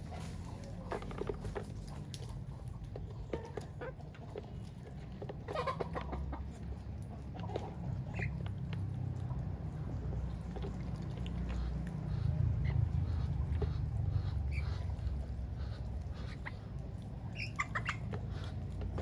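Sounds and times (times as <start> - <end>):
chickens clucking: 0.0 - 19.0
steady low rumble: 8.9 - 19.0.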